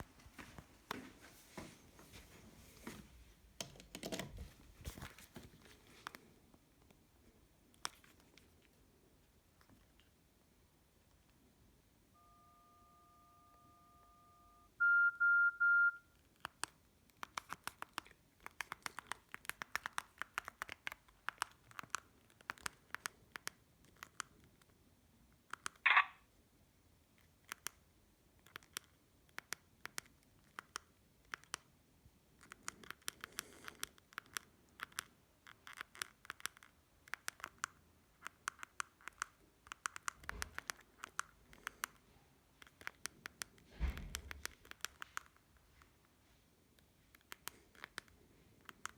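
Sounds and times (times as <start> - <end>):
short beeps: 12.2 - 16.1
phone button clicks: 25.9 - 26.1.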